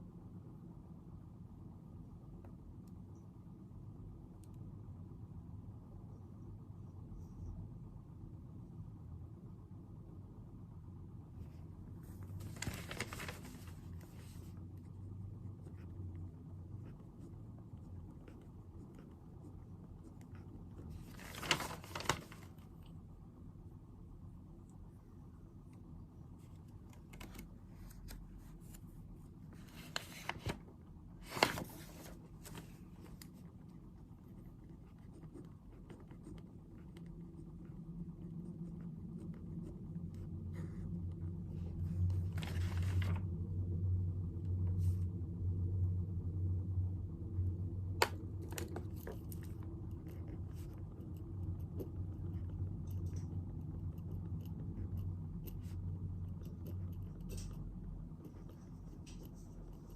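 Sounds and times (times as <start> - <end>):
low steady hum: 0.0 - 59.9
clicks and rustles of handling: 12.0 - 14.6, 20.0 - 23.0, 26.3 - 33.8.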